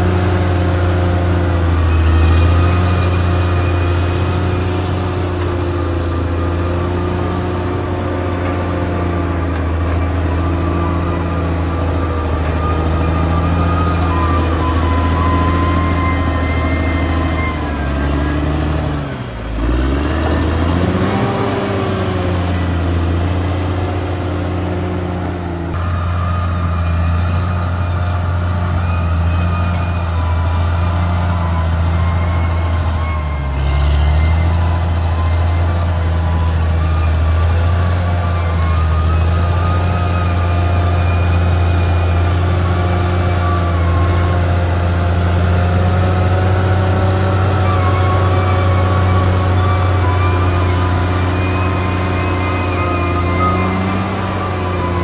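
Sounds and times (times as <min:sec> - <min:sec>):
bulldozer diesel engine running: 0:00.0 - 0:55.0.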